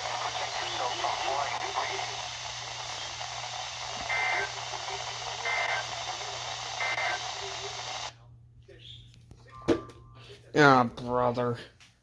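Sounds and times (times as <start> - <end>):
two-tone digital data bursts: 0.0 - 8.1
radio static hiss: 0.0 - 8.2.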